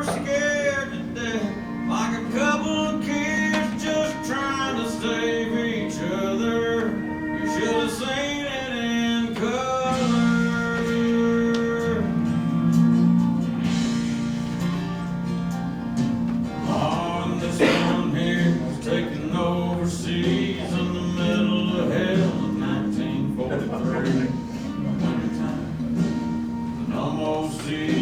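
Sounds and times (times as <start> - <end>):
person singing long notes: 0.0 - 13.5, 16.6 - 28.0
guitar: 0.0 - 28.0.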